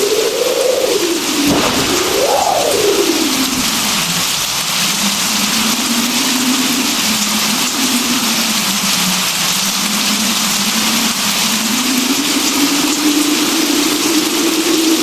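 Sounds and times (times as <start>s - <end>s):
steady rain hiss: 1.2s - 6.9s.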